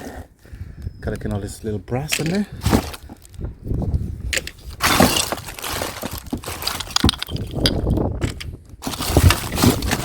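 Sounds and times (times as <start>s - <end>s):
junk clattering when rummaged: 2.0s - 3.5s, 4.2s - 10.0s.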